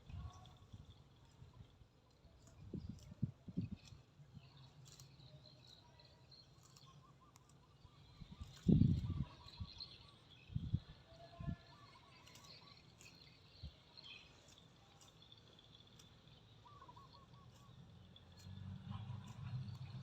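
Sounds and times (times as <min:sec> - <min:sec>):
birds chirping and trilling: 0:06.3 - 0:18.4.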